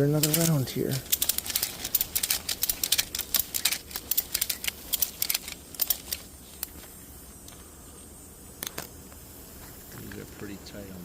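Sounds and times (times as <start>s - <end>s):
ratchet strap clicking: 0.0s - 6.8s.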